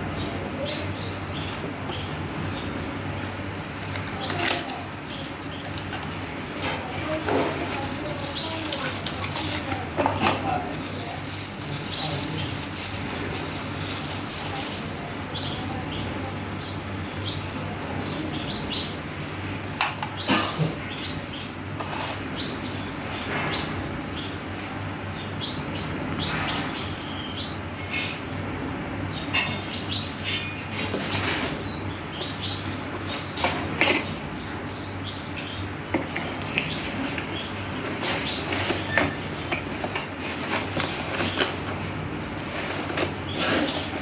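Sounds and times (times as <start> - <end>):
plastic packaging rustling: 3.7 - 19.4, 36.5 - 44.0.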